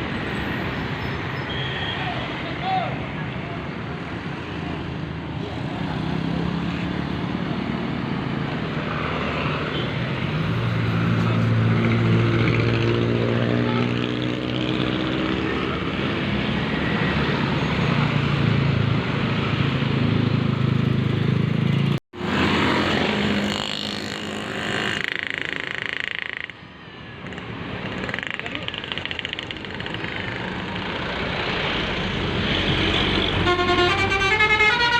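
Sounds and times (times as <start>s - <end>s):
road noise: 0.0s - 34.9s
bus engine passing: 29.5s - 34.9s.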